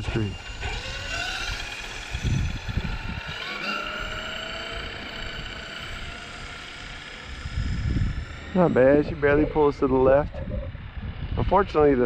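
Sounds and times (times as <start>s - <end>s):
electric motor and gears whining: 0.0s - 12.0s.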